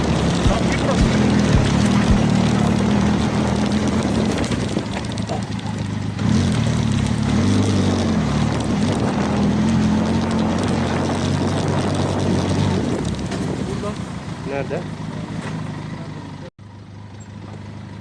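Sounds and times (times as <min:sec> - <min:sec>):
motorcycle engine running: 0:00.0 - 0:18.0
wind noise on microphone: 0:07.7 - 0:14.0.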